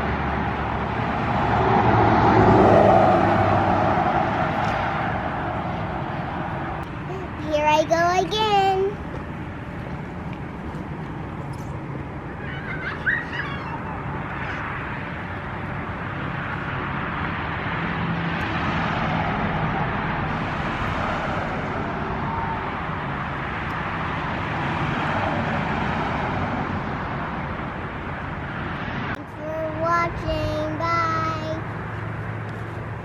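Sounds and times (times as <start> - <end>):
scooter wheels rolling on pavement: 6.6 - 15.8, 29.8 - 33.0.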